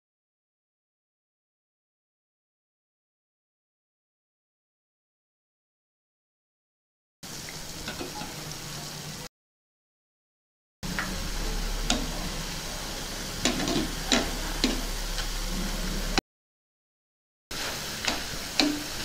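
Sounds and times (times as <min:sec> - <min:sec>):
food deep-frying in oil: 0:07.2 - 0:09.3, 0:10.8 - 0:16.2, 0:17.5 - 0:19.0.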